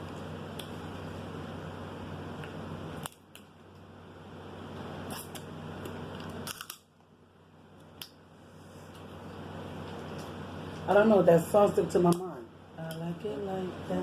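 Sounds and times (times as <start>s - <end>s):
low steady hum: 0.0s - 14.0s
crab shells cracking: 5.1s - 6.9s.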